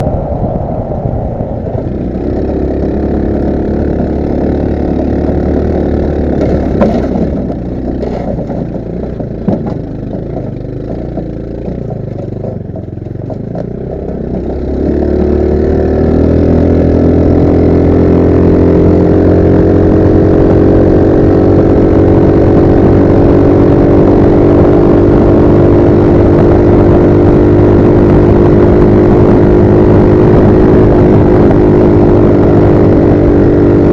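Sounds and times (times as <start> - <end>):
go-kart engine revving: 1.7 - 33.9
rattling knocks: 3.8 - 15.8.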